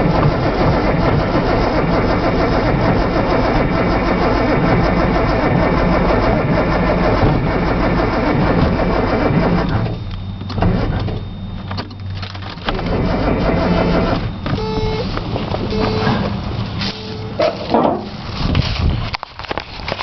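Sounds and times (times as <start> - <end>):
starter motor cranking: 0.0 - 11.2, 11.8 - 17.4
short tones: 13.6 - 17.6.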